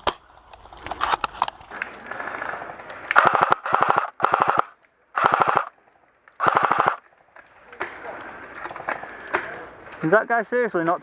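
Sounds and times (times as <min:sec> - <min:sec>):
airsoft rifle firing: 0:03.2 - 0:05.7, 0:06.4 - 0:07.0.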